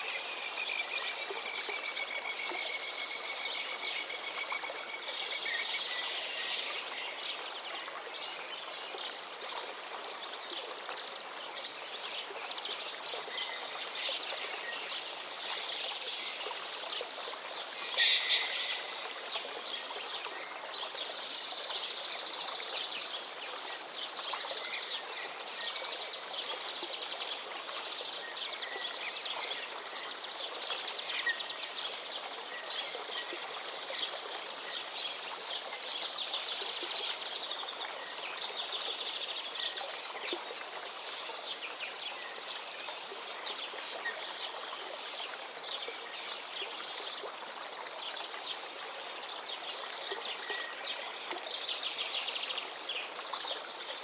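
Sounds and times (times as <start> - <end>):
river water flowing: 0.0 - 54.0
birds chirping: 17.8 - 19.1.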